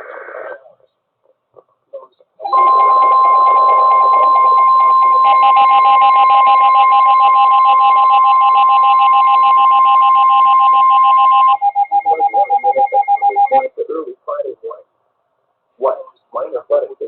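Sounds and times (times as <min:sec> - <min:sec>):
steady two-pitch electronic alarm: 0:02.4 - 0:13.7
fast pulsing high tone: 0:02.5 - 0:13.7.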